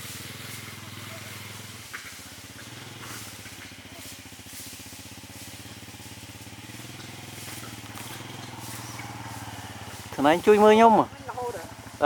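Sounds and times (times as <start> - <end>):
small engine running: 0.0 - 12.0.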